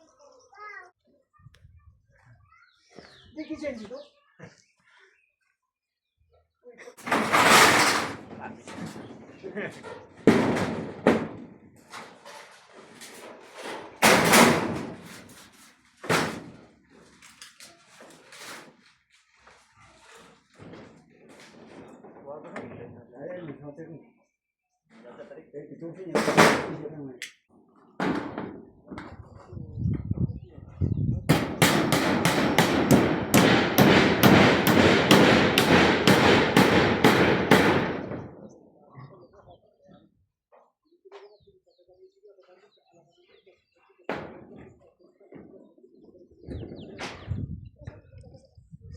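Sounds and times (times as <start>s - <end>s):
loud bangs: 7.0s - 9.6s, 10.2s - 11.8s, 14.0s - 15.4s, 16.0s - 16.6s, 26.2s - 26.9s, 31.3s - 38.5s
knocks and clatter: 7.0s - 16.7s, 26.2s - 26.8s, 28.0s - 29.2s, 31.3s - 38.5s
hammer blows ringing: 31.3s - 38.2s.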